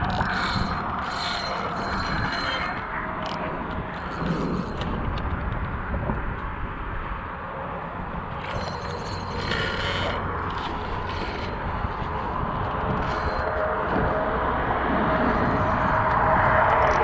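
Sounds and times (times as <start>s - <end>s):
fishing reel creaking and clicking: 0.0s - 5.6s, 8.4s - 14.2s
low rumble of traffic: 0.0s - 17.0s.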